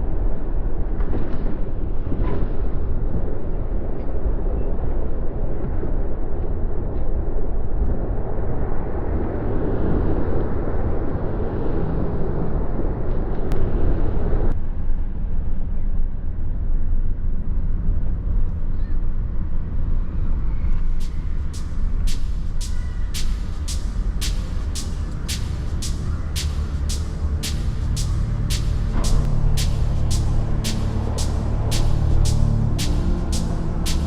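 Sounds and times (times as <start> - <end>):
vehicle traffic rumble: 17.3 - 34.0.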